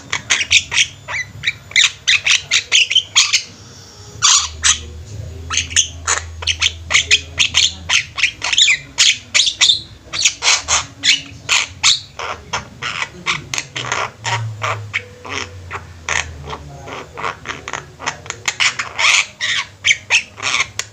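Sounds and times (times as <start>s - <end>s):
birds squawking harshly: 0.0s - 3.6s, 4.2s - 20.9s.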